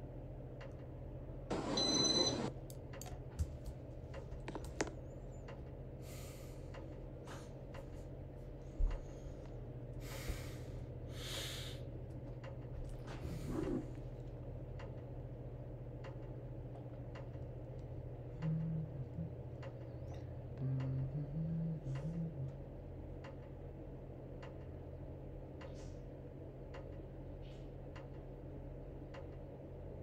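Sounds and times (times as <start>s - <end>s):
ceiling fan motor humming: 0.0s - 30.0s
short breathy hisses: 10.1s - 11.8s.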